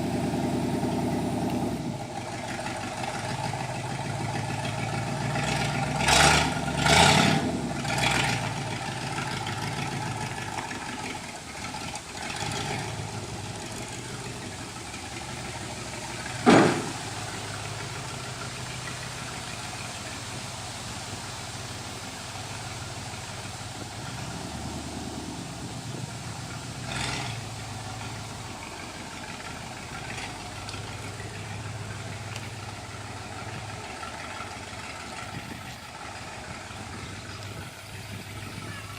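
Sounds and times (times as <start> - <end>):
pickup truck engine idling: 0.0 - 38.9
sharp bang: 16.4 - 17.1.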